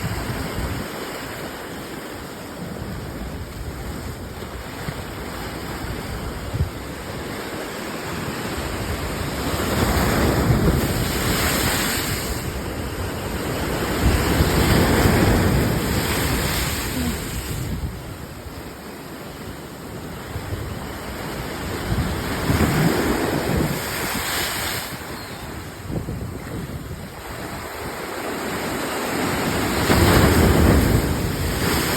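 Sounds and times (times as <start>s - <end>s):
ocean waves breaking: 0.0s - 31.9s
wind buffeting microphone: 8.2s - 18.3s, 20.4s - 28.6s, 29.2s - 31.9s.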